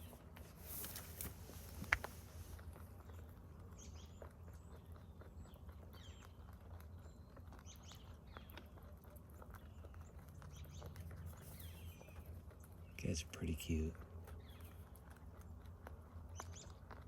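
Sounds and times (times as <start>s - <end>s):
rabbits crunching feed: 0.0s - 17.0s.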